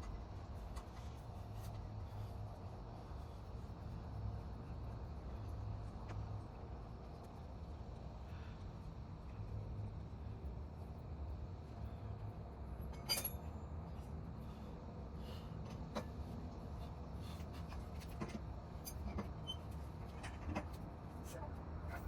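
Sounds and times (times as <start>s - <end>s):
light clinks and knocks: 12.9s - 13.5s.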